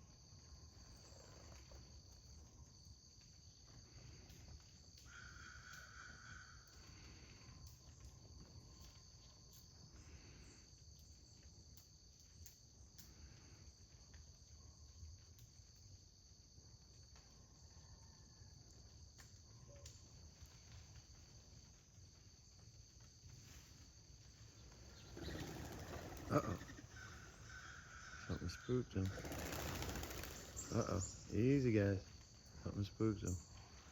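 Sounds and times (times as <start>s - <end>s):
high-pitched insect trilling: 25.0s - 33.7s.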